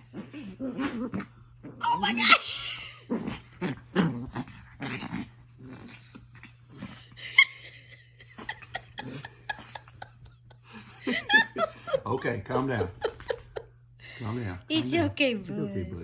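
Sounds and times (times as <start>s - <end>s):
dog growling and snarling: 0.0s - 7.2s, 8.3s - 11.7s.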